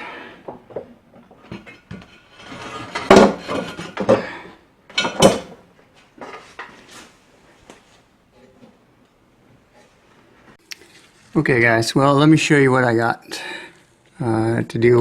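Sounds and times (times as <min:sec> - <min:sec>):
metal clanks and rattles: 0:00.6 - 0:04.3, 0:04.9 - 0:05.6.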